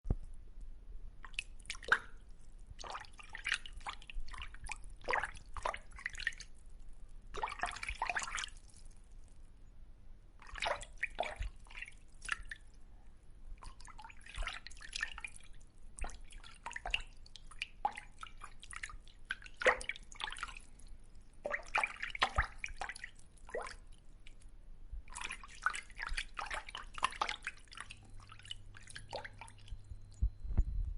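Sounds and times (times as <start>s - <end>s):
fish splashing in water: 13.6s - 23.9s.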